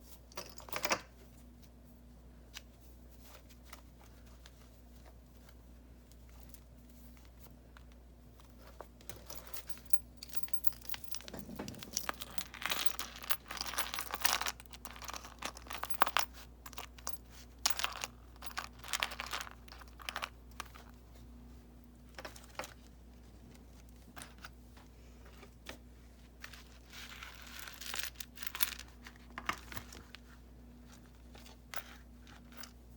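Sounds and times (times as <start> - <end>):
steady low hum: 1.2 - 18.8.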